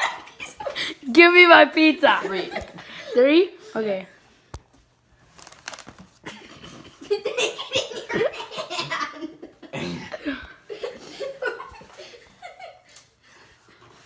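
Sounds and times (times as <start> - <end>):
people speaking: 0.0 - 4.2
people laughing: 6.3 - 13.0.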